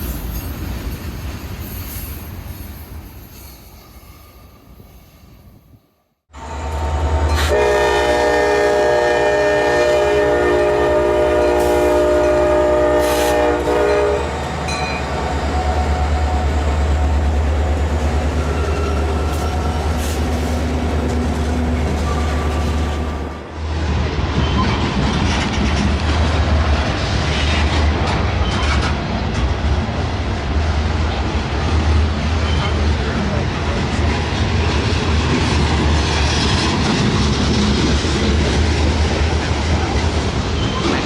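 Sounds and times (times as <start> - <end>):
train air horn blast: 6.4 - 14.4
locomotive engine rumble: 6.4 - 24.3.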